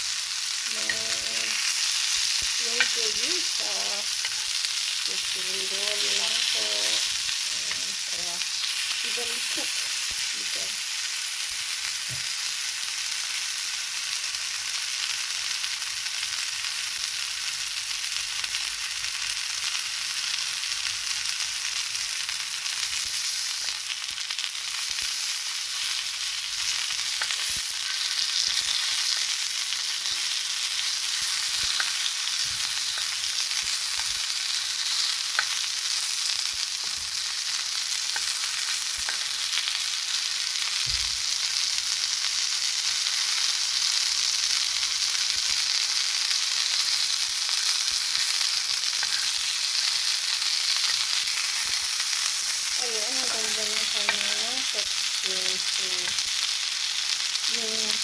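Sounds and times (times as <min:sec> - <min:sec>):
sausages sizzling in a pan: 0:00.0 - 0:58.0.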